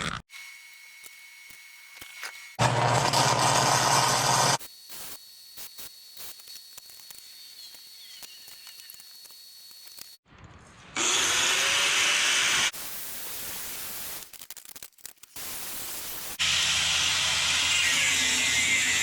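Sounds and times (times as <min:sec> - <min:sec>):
arc welding crackling hiss: 0:04.2 - 0:10.2, 0:12.7 - 0:16.8.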